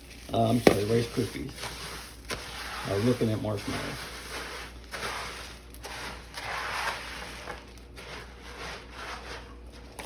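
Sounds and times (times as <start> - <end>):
spatula stirring sticky cereal: 0.0 - 10.0.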